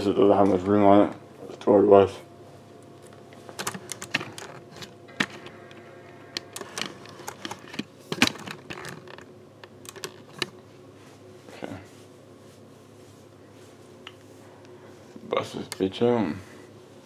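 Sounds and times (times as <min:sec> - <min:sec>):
faint steady hum: 0:00.0 - 0:17.0
clicks of computer hardware handled: 0:03.0 - 0:10.6.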